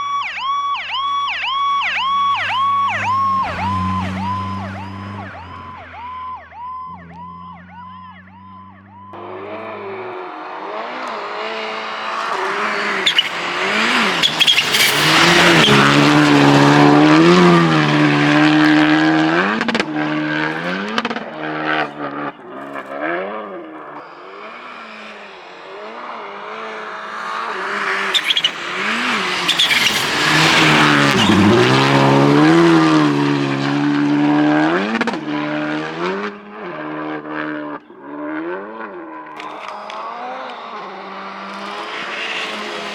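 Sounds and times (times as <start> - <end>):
warbling siren-like tone: 0.0 - 22.4
rally car engines revving: 0.8 - 42.9.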